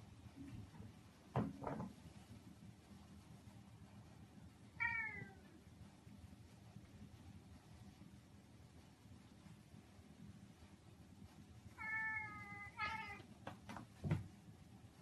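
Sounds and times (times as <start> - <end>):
cat meowing: 4.8 - 5.5, 11.8 - 13.3.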